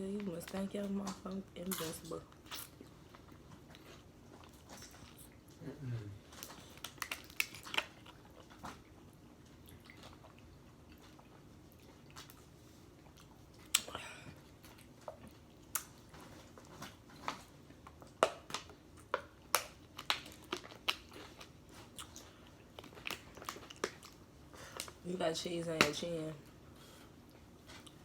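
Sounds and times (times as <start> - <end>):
chips crunching: 6.4 - 8.2.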